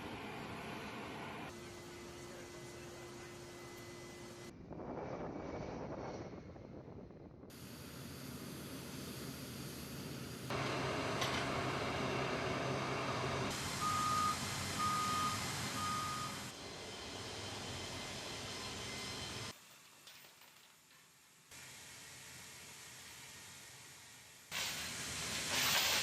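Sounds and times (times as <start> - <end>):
vehicle engine noise: 0.0 - 19.5
reversing alarm beeping: 12.1 - 16.6.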